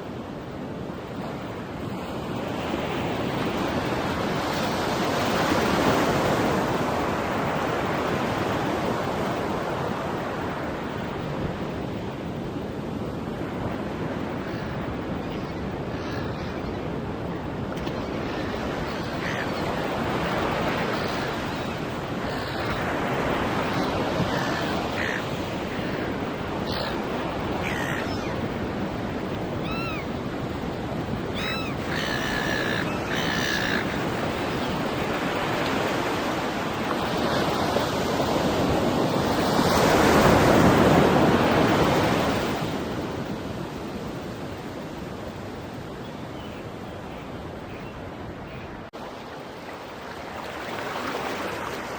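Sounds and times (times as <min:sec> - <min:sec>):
ocean surf on beach: 0:00.0 - 0:51.9
seagulls calling: 0:14.4 - 0:35.0.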